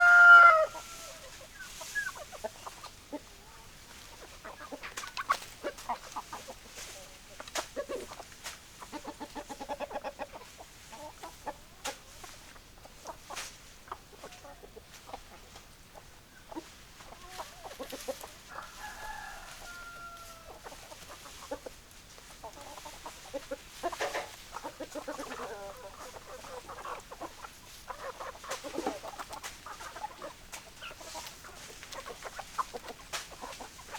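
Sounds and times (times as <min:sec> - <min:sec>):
rooster crowing: 0:00.0 - 0:01.2, 0:18.5 - 0:20.6
hens clucking: 0:00.0 - 0:33.9.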